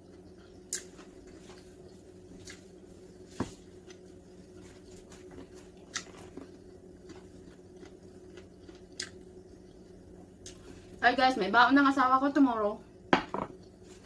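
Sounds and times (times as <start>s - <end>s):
person chewing: 0.0s - 10.8s
faint steady hum: 0.0s - 14.0s.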